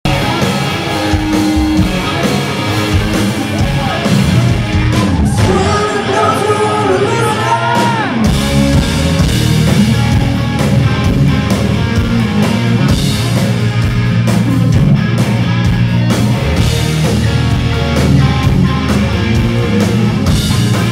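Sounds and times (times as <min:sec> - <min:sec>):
rock band playing live: 0:00.0 - 0:20.9
person singing: 0:05.3 - 0:08.2.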